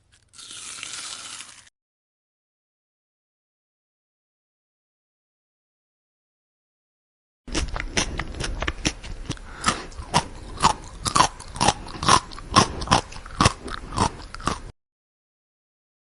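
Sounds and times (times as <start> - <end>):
person chewing crunchy food: 0.0 - 1.7, 7.5 - 14.8.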